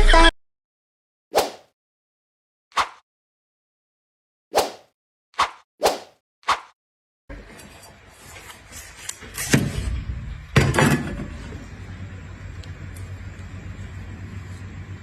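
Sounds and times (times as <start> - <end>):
low background hum: 7.3 - 15.0.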